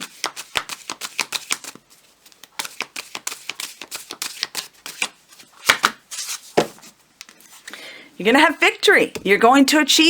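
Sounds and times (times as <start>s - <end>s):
cards being shuffled: 0.0s - 6.8s.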